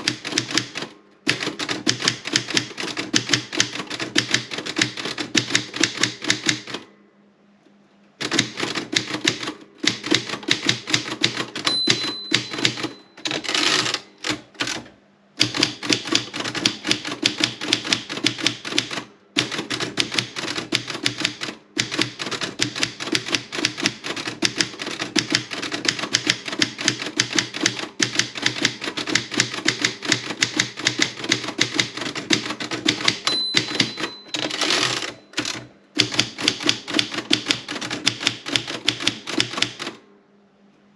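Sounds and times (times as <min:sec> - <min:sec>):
typewriter carriage return rattle: 0:00.0 - 0:06.8, 0:08.2 - 0:40.0
typewriter key strikes: 0:00.0 - 0:06.8, 0:08.2 - 0:40.0
typewriter margin bell ding: 0:11.6 - 0:14.2, 0:33.0 - 0:35.6.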